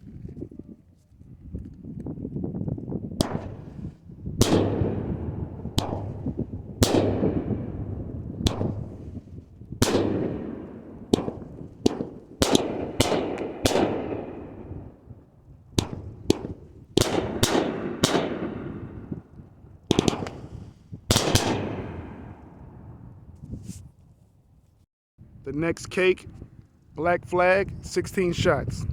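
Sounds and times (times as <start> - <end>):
fireworks bangs with echo: 3.2 - 19.3, 19.9 - 22.9.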